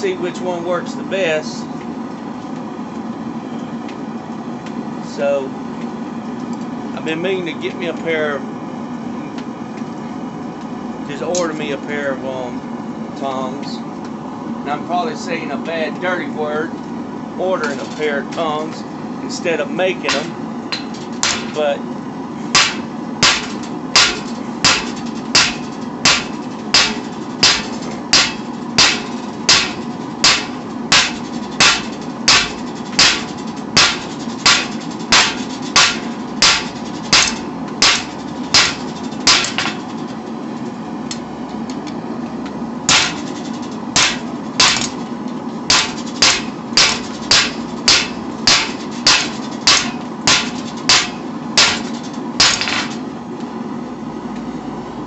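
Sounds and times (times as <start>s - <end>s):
hammer striking steel on anvil: 20.0s - 21.6s, 22.5s - 39.9s, 42.9s - 43.4s, 44.0s - 45.0s, 45.7s - 53.0s.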